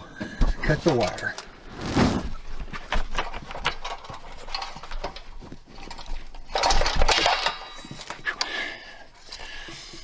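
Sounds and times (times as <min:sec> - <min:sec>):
metal clicking and clinking: 0:02.9 - 0:08.5.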